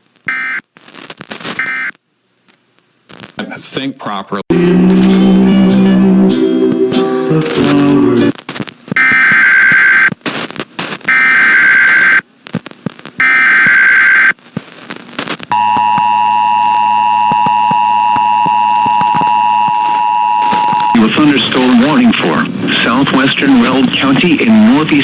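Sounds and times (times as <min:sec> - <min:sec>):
radio static: 0:06.9 - 0:25.0
data burst tones: 0:08.9 - 0:10.2, 0:11.0 - 0:12.2, 0:13.2 - 0:14.4, 0:15.4 - 0:22.0
two-tone attention signal: 0:15.5 - 0:21.0.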